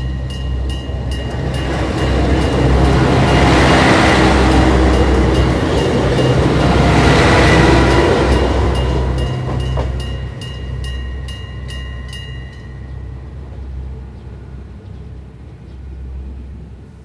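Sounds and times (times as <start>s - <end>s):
level crossing alarm bell ringing: 0.0s - 13.2s
low rumble of train: 0.0s - 17.0s.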